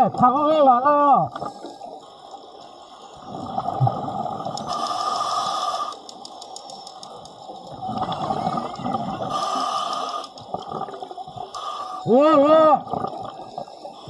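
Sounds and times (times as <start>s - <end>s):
air bubbling: 3.2s - 4.8s, 7.7s - 11.6s, 12.7s - 14.0s
diver breathing through mask: 3.3s - 6.2s, 8.4s - 12.1s.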